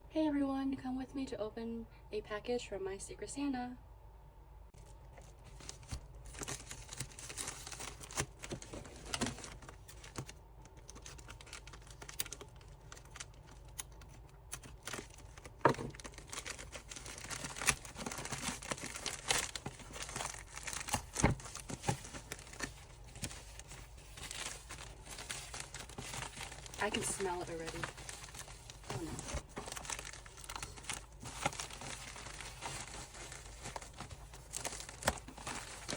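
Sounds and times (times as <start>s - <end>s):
packaging tearing and crinkling: 4.8s - 35.9s.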